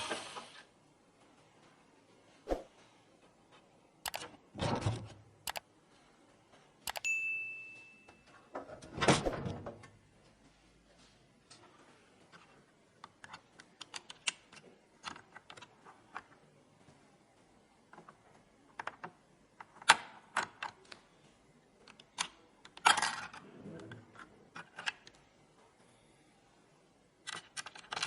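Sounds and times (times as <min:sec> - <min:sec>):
hardware clicks and taps: 0:05.5 - 0:05.7, 0:06.5 - 0:08.6.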